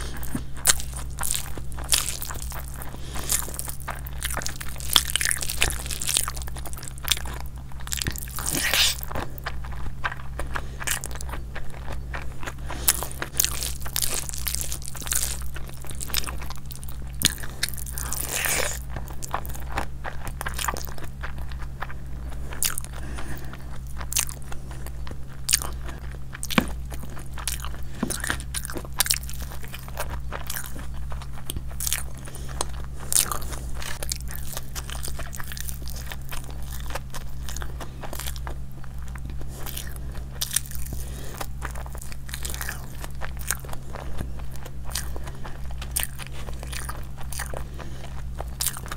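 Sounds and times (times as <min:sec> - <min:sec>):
chewing and crunching food: 0:00.0 - 0:48.9
steady low hum: 0:00.0 - 0:48.9.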